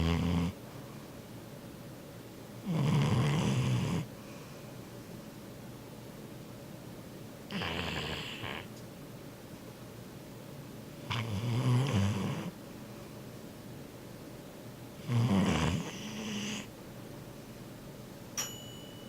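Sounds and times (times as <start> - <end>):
dog snoring: 0.0 - 0.6, 2.6 - 4.1, 7.5 - 8.7, 11.0 - 12.6, 15.0 - 16.7
faint high tone: 18.4 - 19.0.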